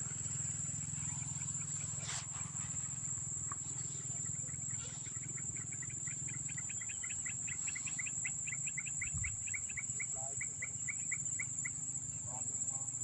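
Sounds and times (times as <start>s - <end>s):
high-pitched insect drone: 0.0s - 13.0s
short insect chirps: 0.0s - 13.0s.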